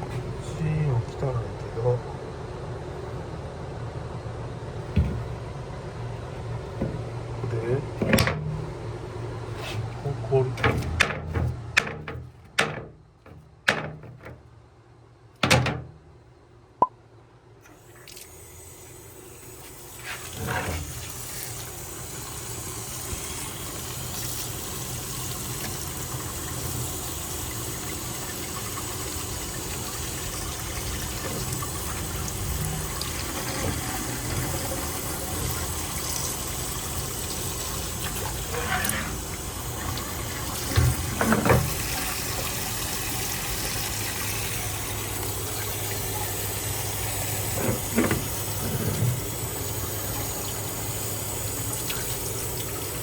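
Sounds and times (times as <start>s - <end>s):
thump: 5.0s - 5.3s, 15.4s - 15.9s
running water from tap: 17.7s - 53.0s.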